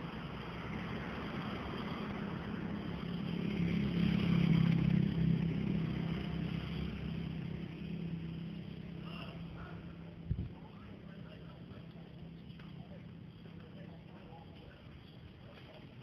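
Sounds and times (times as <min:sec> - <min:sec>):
vehicle engine passing by: 0:00.0 - 0:10.0.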